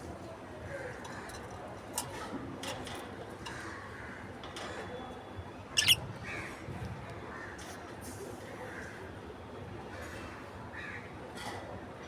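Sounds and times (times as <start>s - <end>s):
parrot squawk: 5.8s - 6.0s
parrots chirping faintly: 5.8s - 6.0s.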